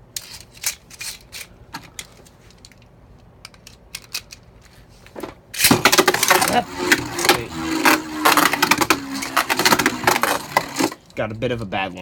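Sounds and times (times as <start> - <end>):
plastic parts clicking and rattling: 0.1 - 11.2.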